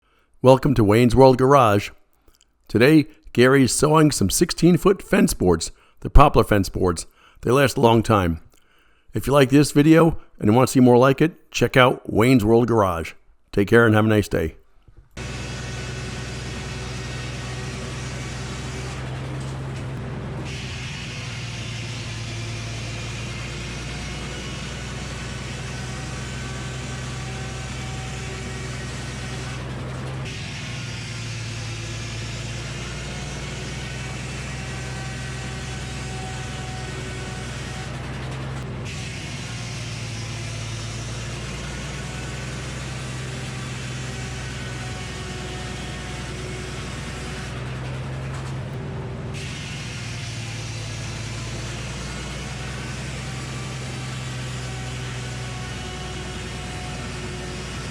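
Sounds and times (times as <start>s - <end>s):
saw blade cutting log: 15.2s - 57.9s
sawmill engine hum: 15.2s - 57.9s.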